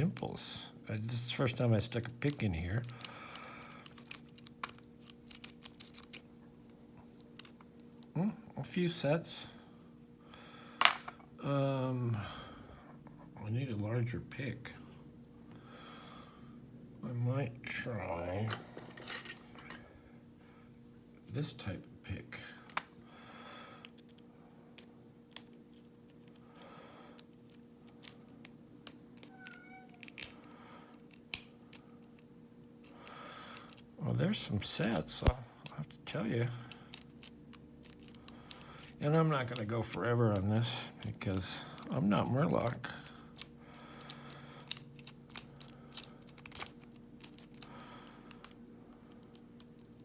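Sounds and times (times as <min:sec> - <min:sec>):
lock pick metal clicks: 0:02.3 - 0:06.2, 0:30.0 - 0:30.4, 0:36.7 - 0:39.6, 0:42.6 - 0:47.7.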